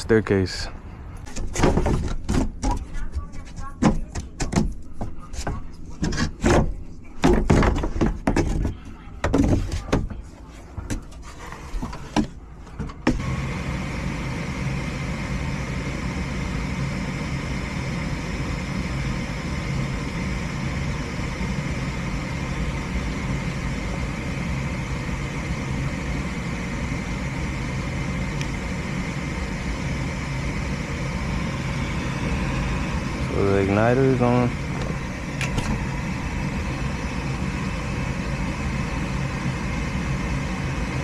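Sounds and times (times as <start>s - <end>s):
furnace motor humming: 10.5s - 41.0s.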